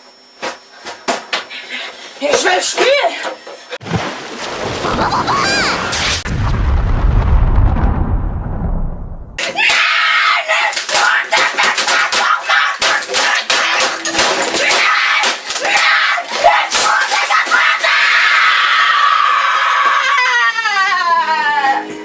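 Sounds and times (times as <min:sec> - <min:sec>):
sharp smacks and crashes: 0:03.8 - 0:08.8
deep boom rumble: 0:05.0 - 0:09.4
boy screaming: 0:05.1 - 0:06.2, 0:15.7 - 0:21.8.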